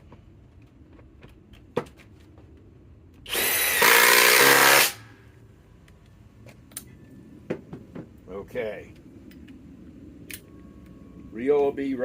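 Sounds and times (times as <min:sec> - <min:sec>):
cordless impact driver hammering: 0:03.3 - 0:05.0.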